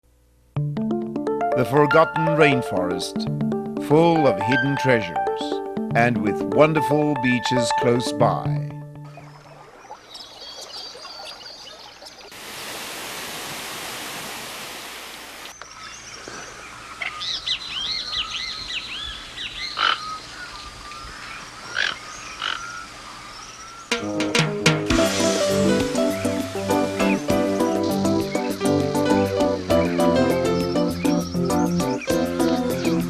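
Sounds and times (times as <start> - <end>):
music: 0.5 - 9.4, 23.9 - 33.0.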